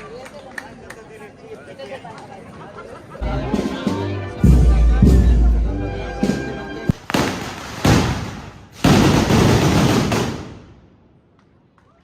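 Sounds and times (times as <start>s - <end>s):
firecrackers crackling and banging: 6.9s - 10.8s.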